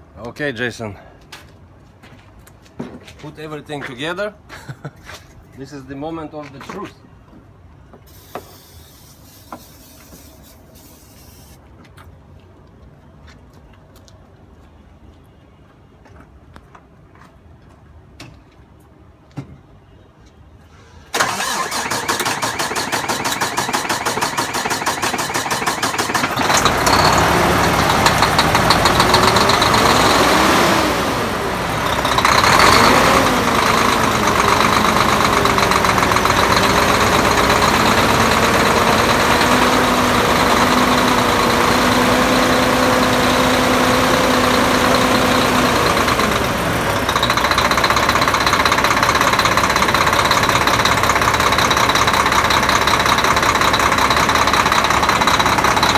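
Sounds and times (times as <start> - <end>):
diesel truck engine running: 21.2 - 55.9
starter motor cranking: 21.2 - 55.9.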